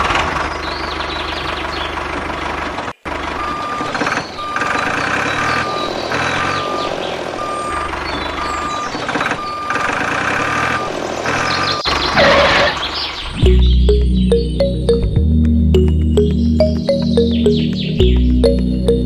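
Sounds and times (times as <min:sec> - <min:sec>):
vehicle running noise: 0:00.0 - 0:19.0
vehicle reversing beeper: 0:03.1 - 0:12.7.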